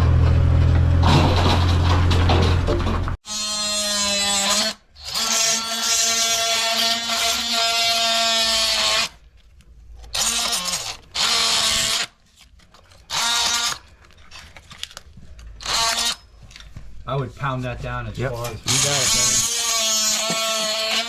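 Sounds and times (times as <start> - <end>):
electric drill motor running: 3.3 - 9.1, 13.1 - 13.8, 15.6 - 16.2, 18.4 - 21.0.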